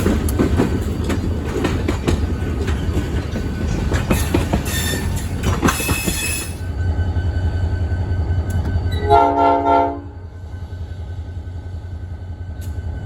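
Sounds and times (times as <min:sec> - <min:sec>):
train wheels squealing and clattering: 0:00.0 - 0:09.1
train rumbling: 0:00.0 - 0:13.0
train horn blast: 0:08.9 - 0:10.2.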